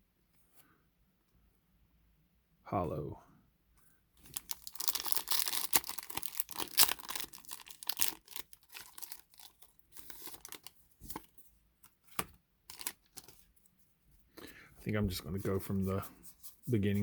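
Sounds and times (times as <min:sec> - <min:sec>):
foil wrapper tearing and crinkling: 0:04.2 - 0:11.3, 0:12.7 - 0:13.4.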